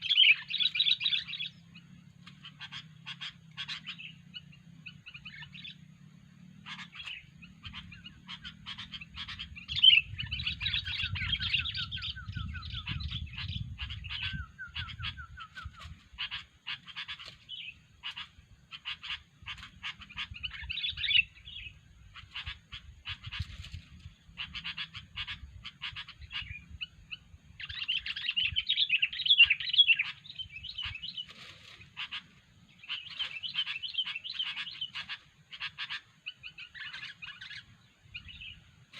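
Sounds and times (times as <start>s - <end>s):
bird chirping and chattering: 0.0s - 38.9s.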